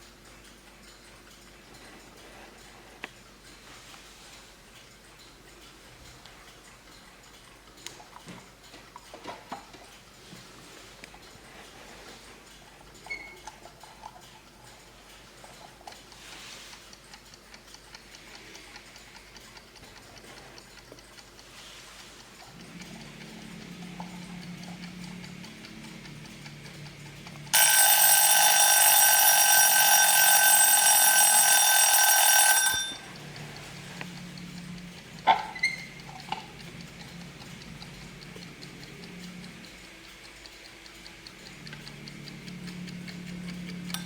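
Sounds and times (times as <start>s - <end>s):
clock ticking: 0.0s - 3.7s, 4.3s - 44.0s
kitchen timer alarm ringing: 27.5s - 44.0s.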